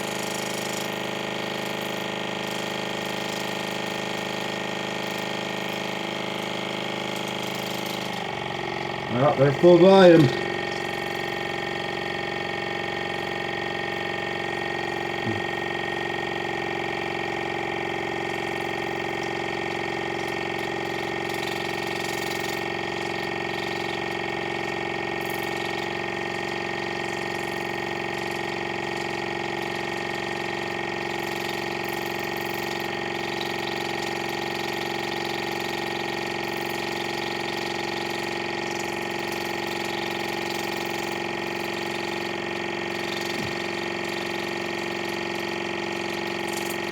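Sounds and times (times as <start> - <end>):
electric pump humming: 0.0 - 46.9.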